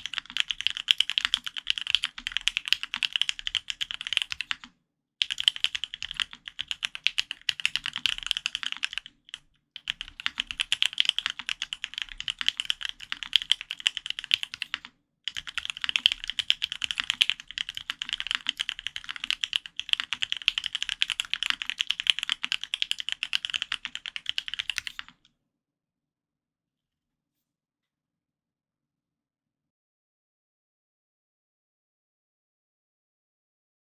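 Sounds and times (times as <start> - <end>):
fast typing on mechanical keyboard: 0.0 - 25.2.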